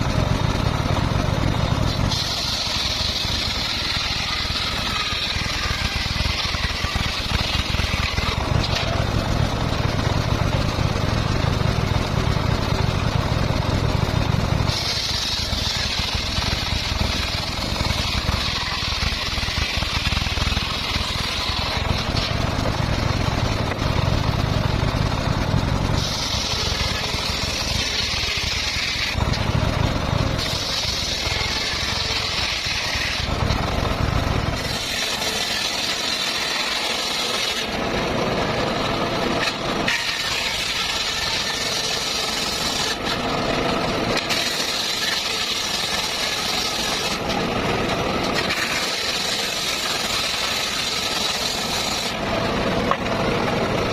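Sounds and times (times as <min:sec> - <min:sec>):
engine droning: 0:00.0 - 0:53.9
circular saw blade singing: 0:01.9 - 0:09.0, 0:26.0 - 0:29.3, 0:30.2 - 0:33.4, 0:39.2 - 0:52.2.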